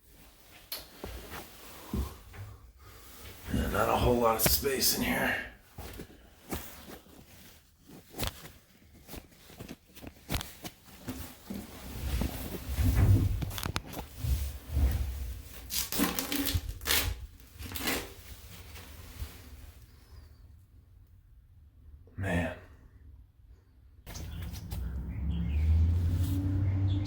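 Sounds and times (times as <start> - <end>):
rustling scrapes: 5.7 - 20.2, 24.1 - 26.9.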